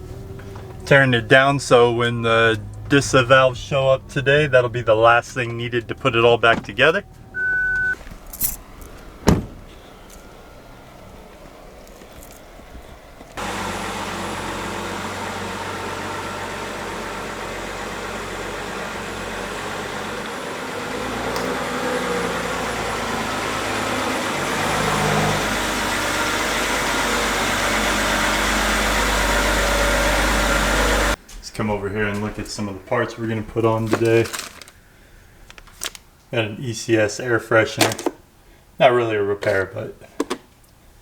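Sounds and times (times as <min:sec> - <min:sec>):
car engine running: 0:00.0 - 0:34.0.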